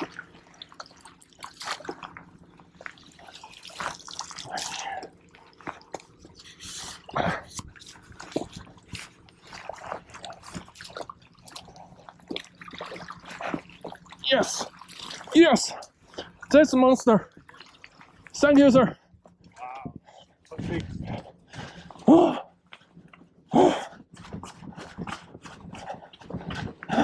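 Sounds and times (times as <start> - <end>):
water splashing and dripping: 0.0 - 19.8.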